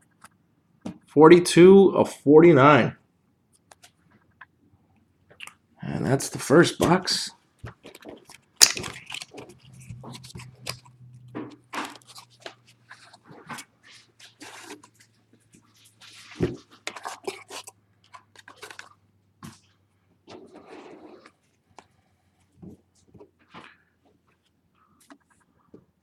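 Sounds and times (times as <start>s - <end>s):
packaging crinkling and rustling: 7.7s - 19.0s
faint low hum: 9.5s - 13.2s.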